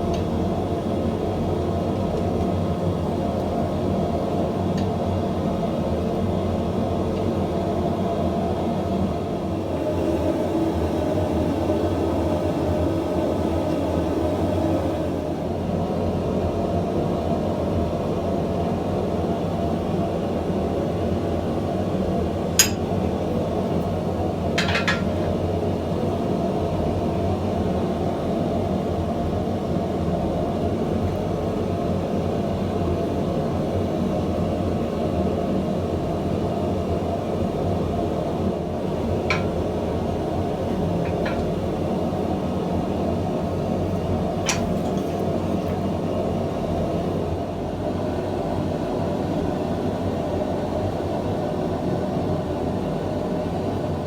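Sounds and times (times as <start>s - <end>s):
steady roar: 9.5s - 15.4s.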